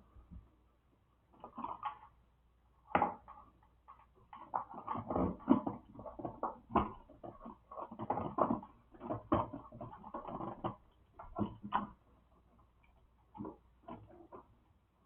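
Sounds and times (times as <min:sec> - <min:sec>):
rustling of wire and plastic: 0:03.0 - 0:14.6.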